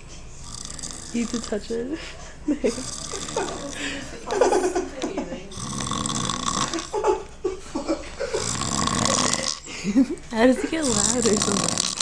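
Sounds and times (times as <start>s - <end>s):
man snoring loudly: 0.4s - 1.6s, 2.7s - 3.8s, 5.5s - 7.0s, 8.3s - 9.7s, 10.8s - 12.0s
whispers or stifled laughter: 6.7s - 8.5s.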